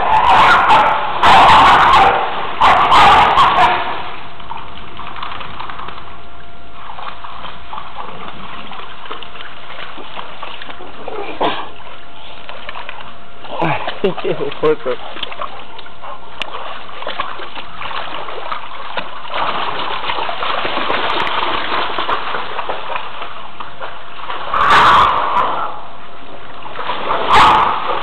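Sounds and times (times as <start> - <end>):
dog barking and growling: 0.0 - 3.9
water splashing: 0.0 - 28.0.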